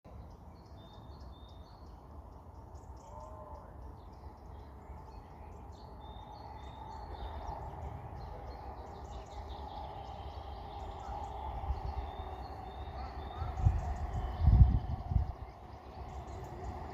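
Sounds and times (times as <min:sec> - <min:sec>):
small birds chirping: 0:00.1 - 0:16.9
wind rumble on microphone: 0:05.6 - 0:16.9
wind and sea rushing: 0:07.5 - 0:16.9.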